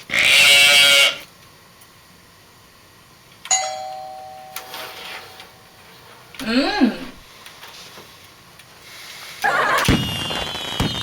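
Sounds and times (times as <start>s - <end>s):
two-tone doorbell chime: 3.5s - 5.8s.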